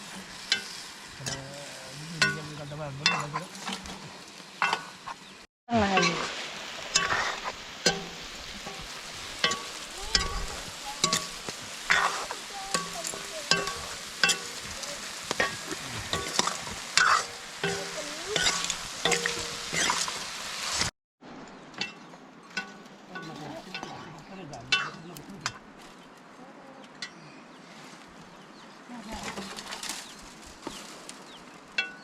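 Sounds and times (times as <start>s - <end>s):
food sizzling in a pan: 0.0s - 20.9s
utensil scraping against pan: 6.9s - 20.9s.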